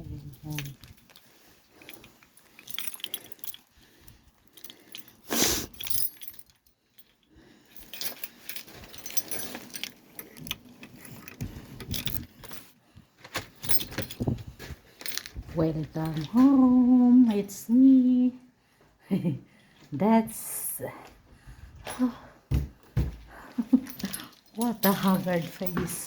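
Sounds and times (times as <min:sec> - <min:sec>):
keys jangling in a door lock: 0:00.0 - 0:12.8, 0:13.4 - 0:16.5, 0:23.5 - 0:26.0.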